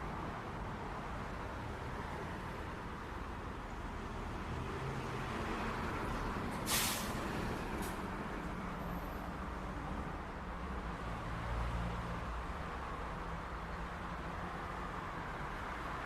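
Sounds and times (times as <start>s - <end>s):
passing vehicles: 0.0s - 16.0s
short sharp hiss: 6.6s - 7.2s.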